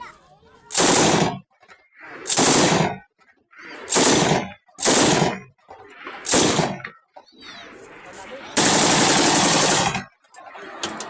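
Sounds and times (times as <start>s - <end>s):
automatic rifle bursts: 0.7s - 1.4s, 2.3s - 3.0s, 3.9s - 5.4s, 6.2s - 6.8s, 8.6s - 10.1s.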